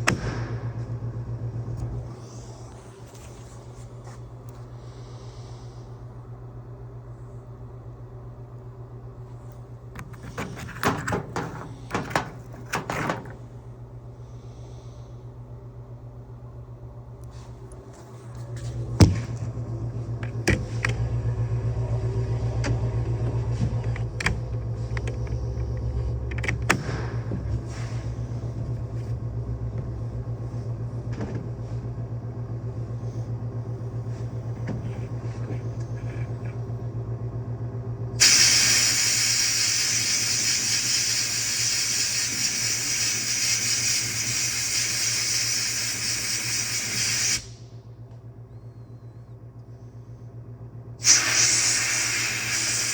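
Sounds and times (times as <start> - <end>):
low mechanical hum: 0.0 - 52.9
loud hiss: 38.2 - 47.6, 51.0 - 52.9.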